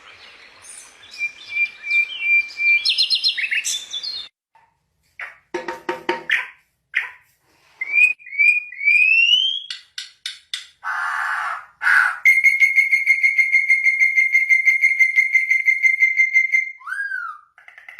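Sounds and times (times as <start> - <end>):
bird whistling: 1.0 - 4.3, 7.8 - 9.8, 10.9 - 17.5.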